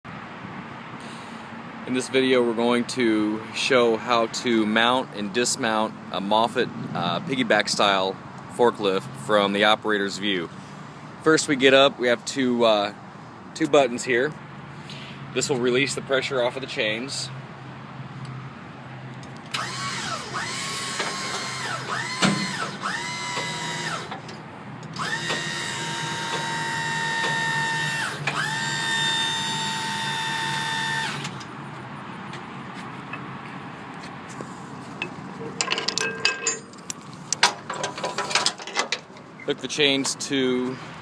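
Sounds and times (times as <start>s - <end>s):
chain tensioner motor whining: 19.5s - 24.2s, 24.9s - 31.5s
metallic clanks: 35.0s - 39.2s.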